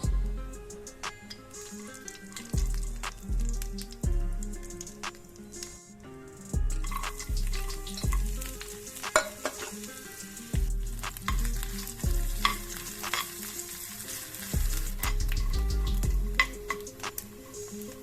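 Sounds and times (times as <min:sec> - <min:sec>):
batter sizzling in hot oil: 0:00.0 - 0:18.0
utensil tapping against pan: 0:09.0 - 0:09.7.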